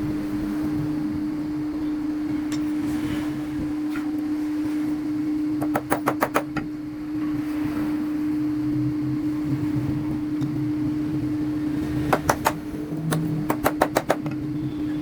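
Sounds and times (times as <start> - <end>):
electric motor hum: 0.0 - 15.0
sharp knocks: 12.1 - 14.4.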